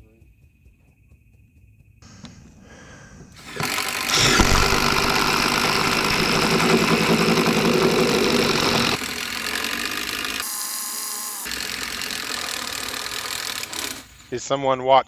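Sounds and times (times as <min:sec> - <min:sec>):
motor running: 0:03.4 - 0:14.2.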